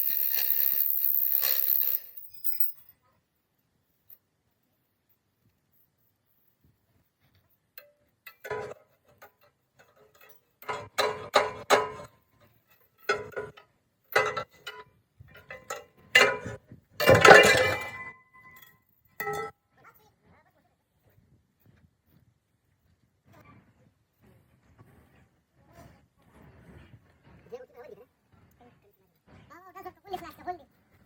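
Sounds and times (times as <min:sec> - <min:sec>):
metal knocks and clinks ringing: 0:00.0 - 0:02.9, 0:15.4 - 0:19.5.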